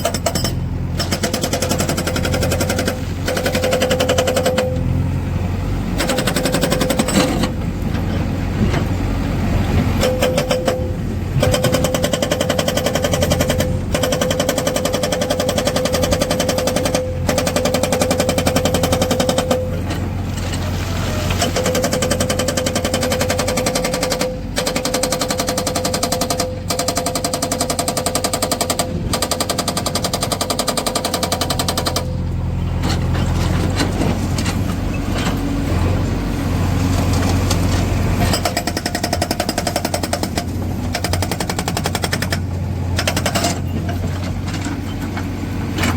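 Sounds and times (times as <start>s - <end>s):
hydraulic breaker hammering stone: 0.0s - 4.9s, 6.0s - 7.6s, 9.8s - 32.2s, 38.2s - 44.4s
diesel engine running: 0.0s - 45.9s.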